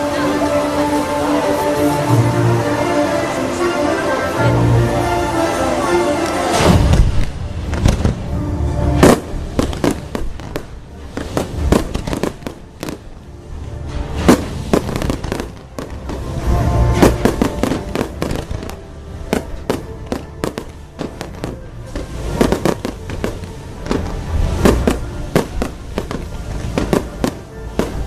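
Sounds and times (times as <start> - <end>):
show music: 0.0 - 28.0
fireworks bangs and booms: 6.5 - 8.3, 9.0 - 13.2, 14.0 - 28.0.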